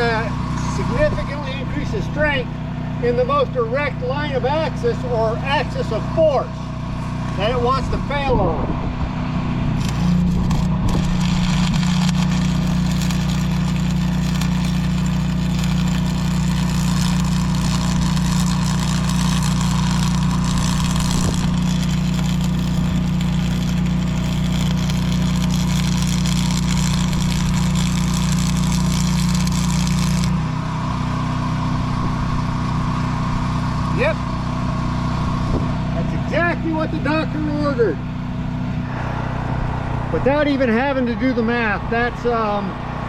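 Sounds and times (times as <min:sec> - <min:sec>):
engine hum: 0:00.0 - 0:43.0
welding arc crackling hiss: 0:09.8 - 0:30.4.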